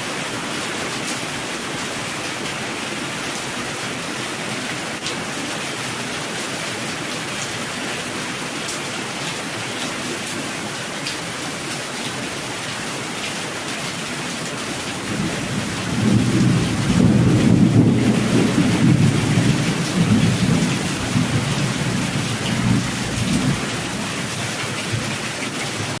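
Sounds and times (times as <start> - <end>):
steady rain: 0.0 - 26.0
rolling thunder: 15.0 - 23.9.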